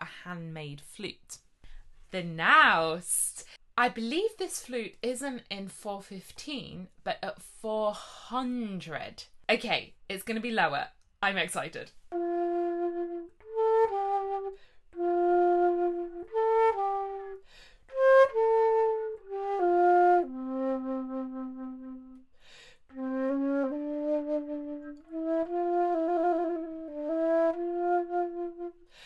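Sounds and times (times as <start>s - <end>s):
player breathing: 17.4s - 17.9s, 22.4s - 22.9s
flute playing held notes: 22.9s - 28.9s.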